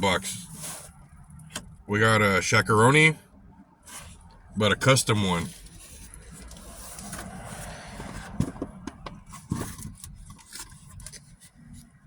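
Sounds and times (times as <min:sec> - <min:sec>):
cardboard box scraping and rustling: 0:00.4 - 0:01.0.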